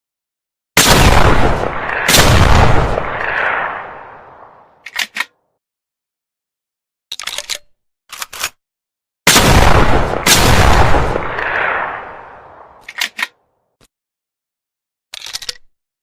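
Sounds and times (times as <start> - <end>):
shotgun shots echoing: 0.8 - 4.7, 9.3 - 12.9.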